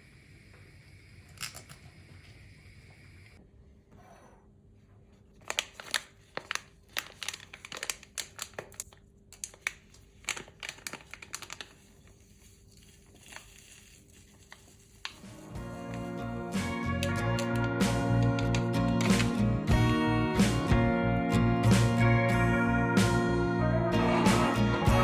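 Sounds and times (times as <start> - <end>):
crinkling handling sounds: 5.1 - 16.1.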